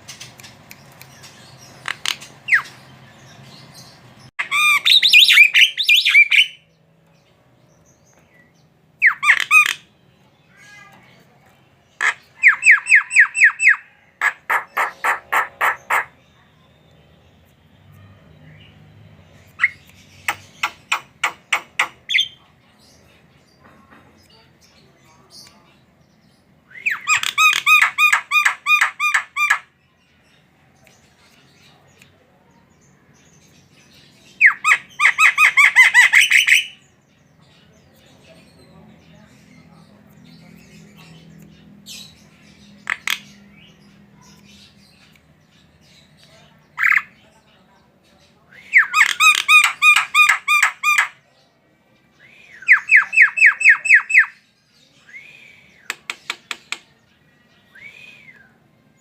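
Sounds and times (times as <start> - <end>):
bird chattering: 0.0 - 2.8, 12.0 - 16.2, 19.6 - 22.4, 34.4 - 36.8, 42.8 - 43.4, 48.7 - 51.2
bird calling harsh notes: 4.4 - 6.6
harsh bird squawks: 4.4 - 6.6, 9.0 - 9.9, 12.0 - 16.2.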